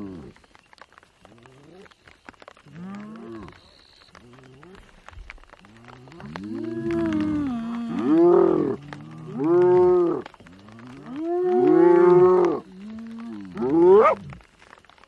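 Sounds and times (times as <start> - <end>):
hyenas groaning: 5.8 - 14.3.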